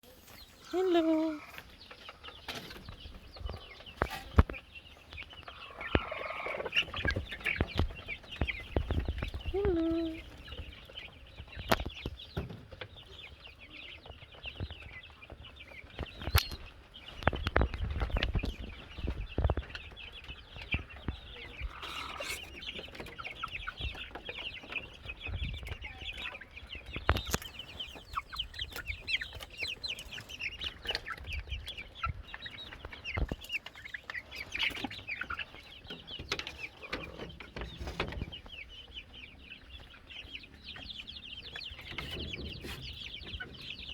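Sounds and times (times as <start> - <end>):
chickens clucking and chirping: 0.0 - 43.9.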